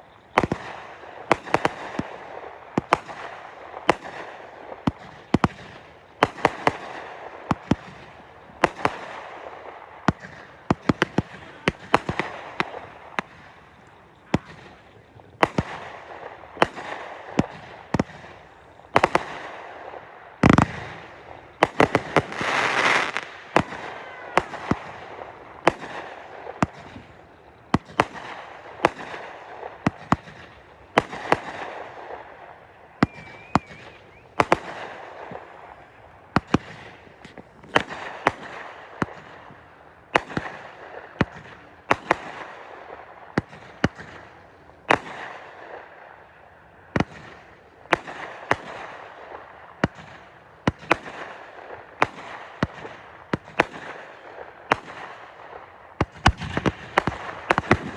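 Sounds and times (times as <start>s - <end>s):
faint firework whistle: 0.0s - 46.3s
fireworks bangs: 0.0s - 57.9s
fireworks crackling: 0.0s - 57.9s.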